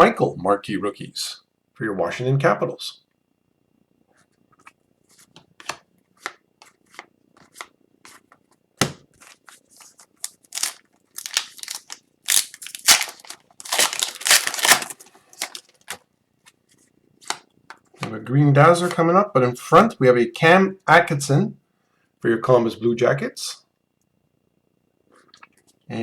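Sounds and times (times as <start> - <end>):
wrapper crinkling and tearing: 9.3 - 16.0.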